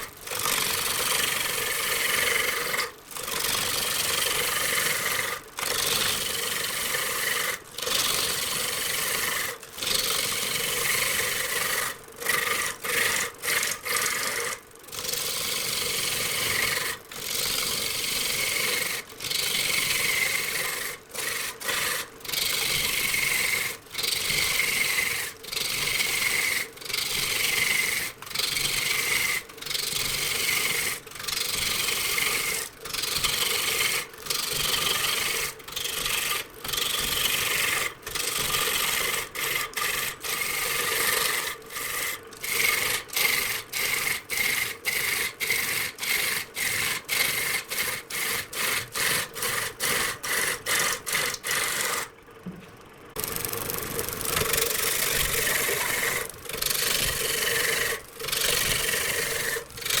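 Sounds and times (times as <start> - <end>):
hand tool rasping on wood: 4.6 - 52.1, 54.4 - 60.0.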